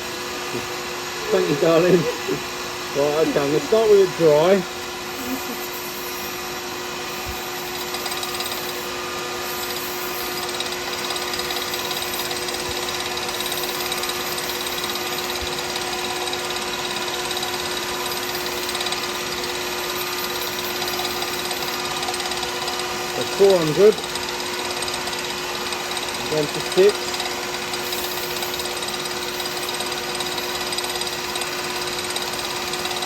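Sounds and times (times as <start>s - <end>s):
wood lathe motor humming: 0.0s - 33.0s
sandpaper sanding spinning wood: 0.5s - 33.0s.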